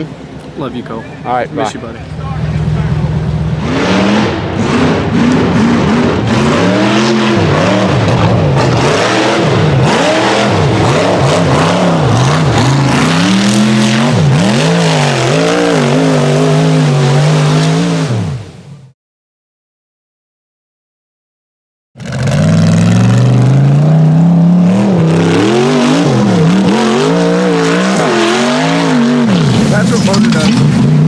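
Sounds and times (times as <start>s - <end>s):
engine revving hard: 2.9s - 18.5s, 22.0s - 31.0s.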